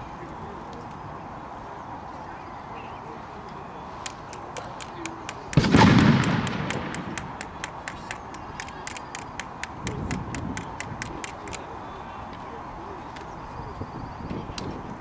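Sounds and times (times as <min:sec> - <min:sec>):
cannon blast: 0:05.6 - 0:07.3.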